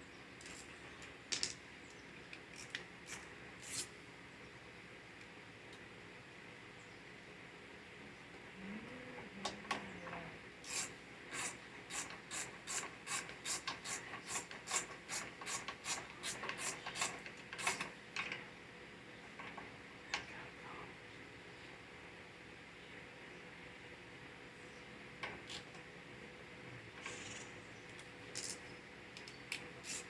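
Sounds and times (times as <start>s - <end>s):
hand tool rasping strokes: 10.6s - 17.8s, 29.8s - 30.0s.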